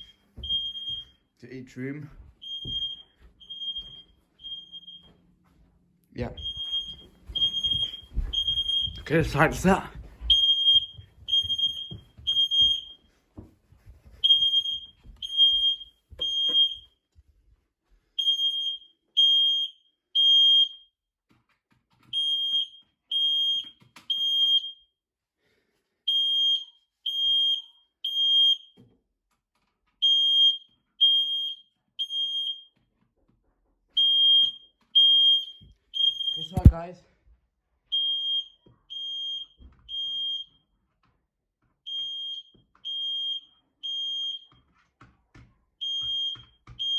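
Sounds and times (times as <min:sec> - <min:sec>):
smoke alarm beeping: 0:00.0 - 0:01.2, 0:02.4 - 0:05.2, 0:06.4 - 0:13.0, 0:14.2 - 0:16.9, 0:18.2 - 0:20.9, 0:22.1 - 0:24.8, 0:26.1 - 0:28.8, 0:30.0 - 0:32.7, 0:34.0 - 0:36.8, 0:37.9 - 0:40.6, 0:41.9 - 0:44.5, 0:45.8 - 0:46.9.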